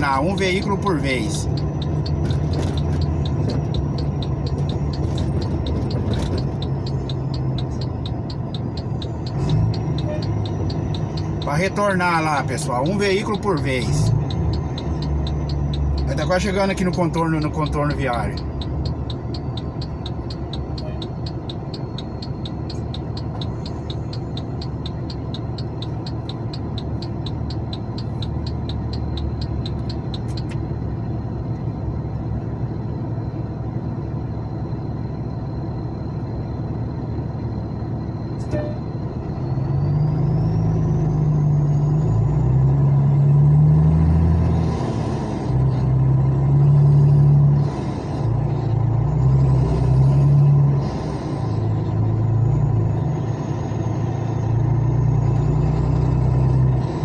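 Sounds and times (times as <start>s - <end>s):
rapid ticking: 0.0s - 30.6s
truck engine running: 0.0s - 57.0s.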